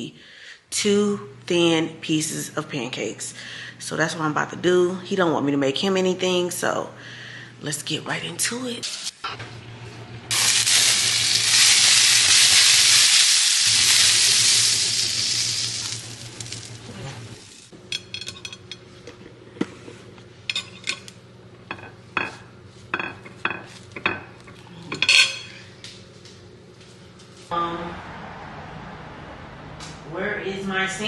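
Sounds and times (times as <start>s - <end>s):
food sizzling in a pan: 10.3s - 17.7s
kitchen utensils clinking: 10.3s - 18.8s, 20.5s - 21.1s, 24.9s - 25.6s.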